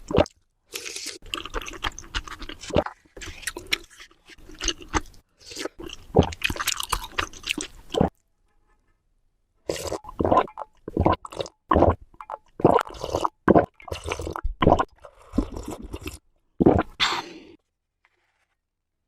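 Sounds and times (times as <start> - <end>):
person chewing wet food: 0.0 - 8.2, 9.7 - 17.0.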